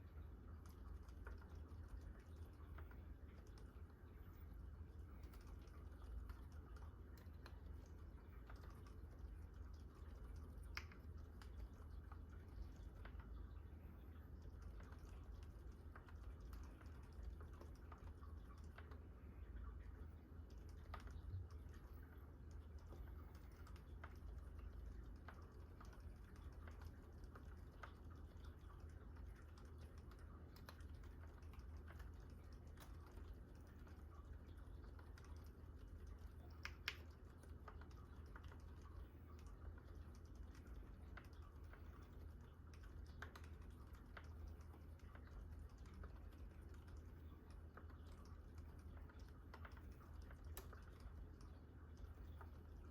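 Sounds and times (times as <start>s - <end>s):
soft keyboard typing: 0.0s - 52.9s.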